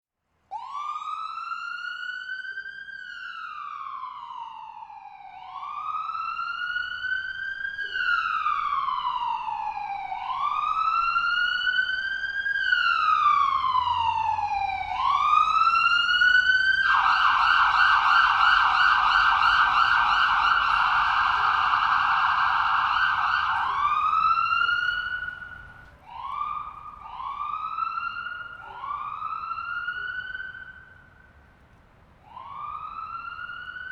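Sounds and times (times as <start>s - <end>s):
ambulance siren: 0.5s - 33.9s.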